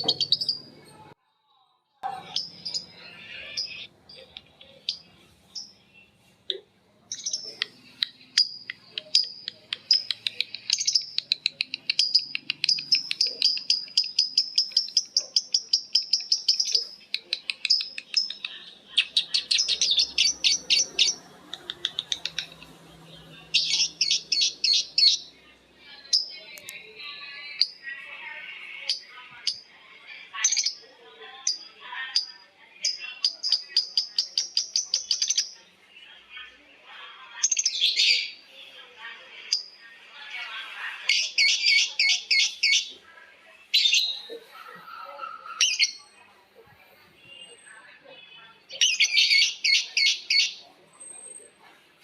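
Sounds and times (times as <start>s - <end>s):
lovebirds chattering trills: 0.0s - 0.9s, 2.0s - 6.3s, 7.1s - 25.4s, 41.0s - 43.0s, 43.7s - 46.2s, 48.6s - 51.6s.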